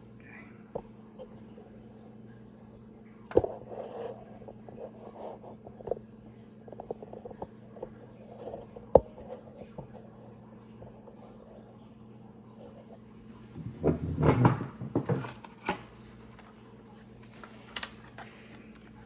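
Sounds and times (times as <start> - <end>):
steady low hum: 0.0 - 19.0
objects knocking: 13.6 - 15.8.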